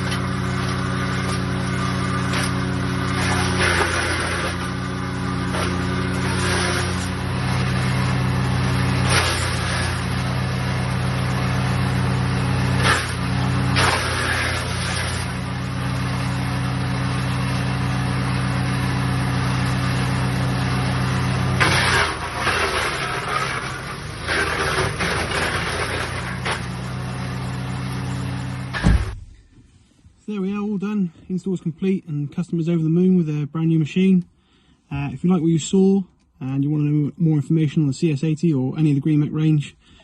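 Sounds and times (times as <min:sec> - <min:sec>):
wood chipper petrol engine running: 0:00.0 - 0:29.6.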